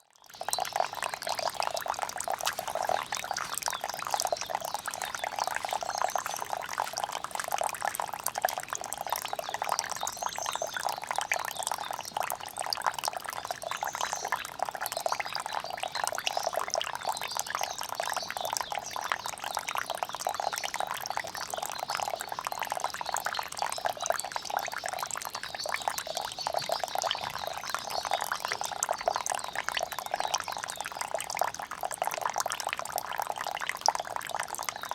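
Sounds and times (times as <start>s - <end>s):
rainwater pouring and splashing: 0.1s - 34.9s.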